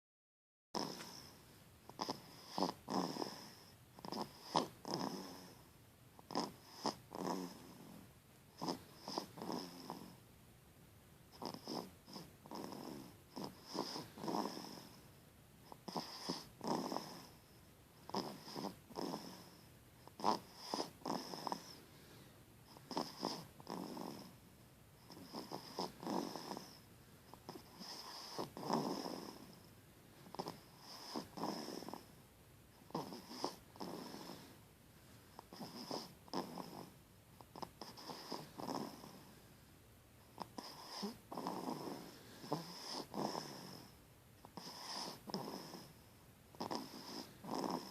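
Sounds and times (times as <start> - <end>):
person snoring: 0.8 - 1.3, 2.0 - 5.6, 6.3 - 8.0, 8.6 - 10.2, 11.4 - 15.0, 15.8 - 17.4, 18.1 - 19.6, 20.2 - 24.3, 25.1 - 26.8, 27.4 - 29.6, 30.3 - 32.1, 32.9 - 34.6, 35.4 - 36.9, 37.5 - 39.3, 40.4 - 43.9, 44.6 - 46.0, 46.6 - 47.9.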